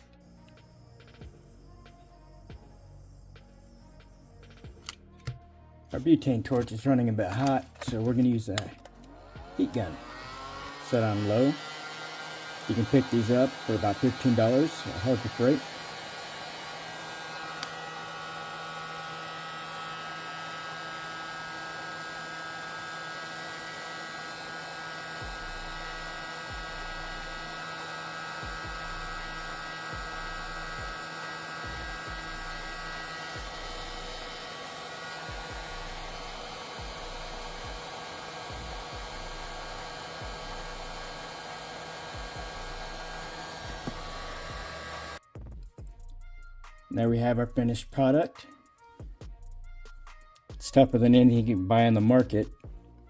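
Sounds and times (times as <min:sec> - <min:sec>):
heat gun blowing hot air: 0:07.3 - 0:45.2.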